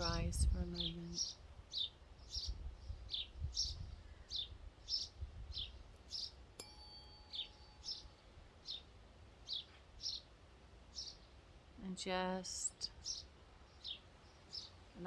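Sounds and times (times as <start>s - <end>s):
bird chirping: 0.0s - 11.4s, 12.6s - 15.0s
tuning fork ringing: 6.5s - 9.1s.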